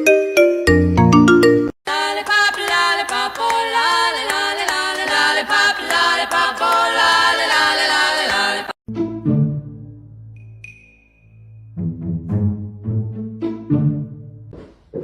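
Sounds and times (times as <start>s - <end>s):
bright struck notes: 10.3s - 11.7s.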